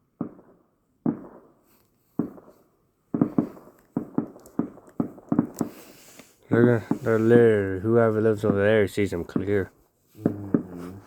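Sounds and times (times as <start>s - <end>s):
distant fireworks bangs: 0.0s - 7.4s, 8.3s - 11.0s.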